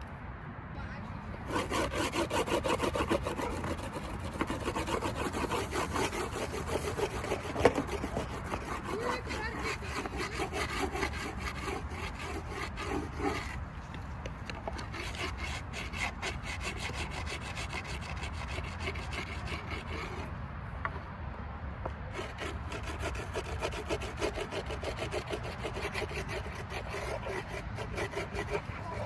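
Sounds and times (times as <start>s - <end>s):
razor blade scraping grip tape: 1.5s - 13.6s, 22.2s - 29.0s.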